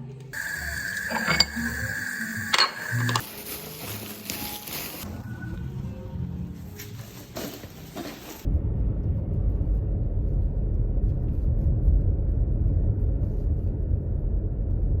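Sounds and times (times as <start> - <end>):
steady low rumbling: 8.5 - 15.0.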